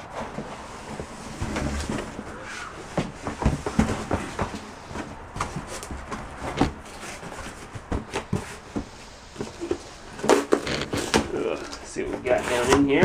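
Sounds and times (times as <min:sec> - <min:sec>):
items knocking in a box: 0:03.0 - 0:08.9.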